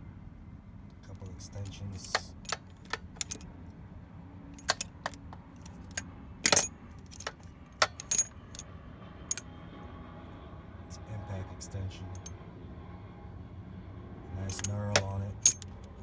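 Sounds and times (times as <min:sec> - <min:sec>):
metal socket extensions clinking: 0:01.6 - 0:03.4, 0:04.6 - 0:08.6, 0:14.5 - 0:16.0.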